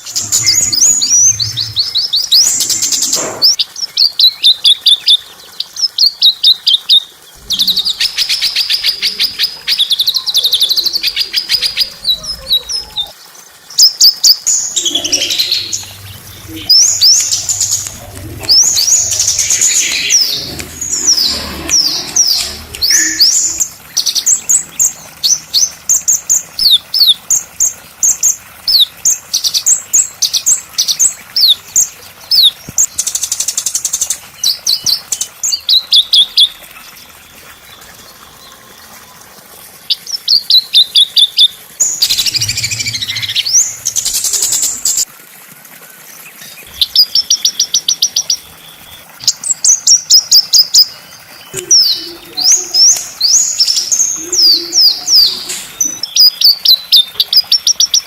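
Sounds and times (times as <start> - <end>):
songbird chirping: 0.0 - 5.7, 6.3 - 25.8, 34.3 - 45.0, 50.9 - 58.0.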